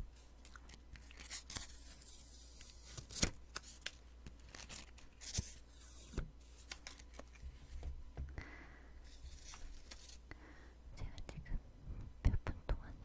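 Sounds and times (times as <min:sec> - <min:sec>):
sticky notes crackling and rustling: 0:00.1 - 0:08.0, 0:09.1 - 0:10.3.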